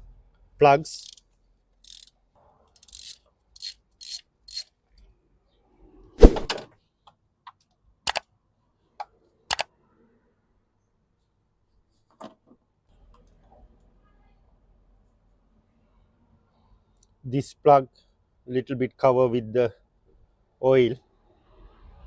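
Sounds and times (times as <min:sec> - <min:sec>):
ratchet clicking: 0:00.9 - 0:01.2, 0:01.8 - 0:02.1, 0:02.8 - 0:04.7.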